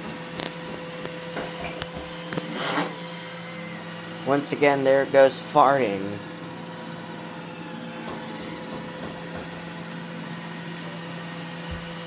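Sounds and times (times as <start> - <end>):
robot vacuum running: 0.2 - 12.0.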